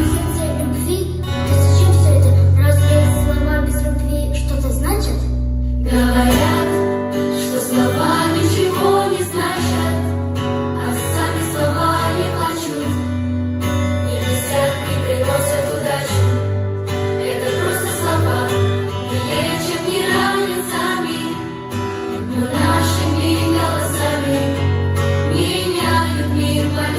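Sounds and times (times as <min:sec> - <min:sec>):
steady bass line: 0:00.0 - 0:26.9
pop song with singing: 0:05.8 - 0:26.9.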